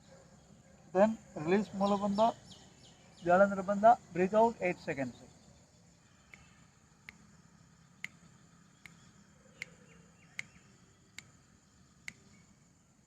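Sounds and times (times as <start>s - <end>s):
faint high-pitched whine: 0.0s - 13.0s
faint sharp ticks: 6.2s - 7.4s, 8.0s - 11.4s, 12.0s - 12.5s.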